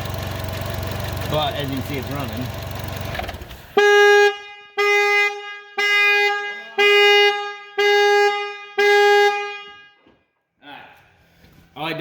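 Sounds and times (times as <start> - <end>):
car horn blasts: 3.7 - 10.2.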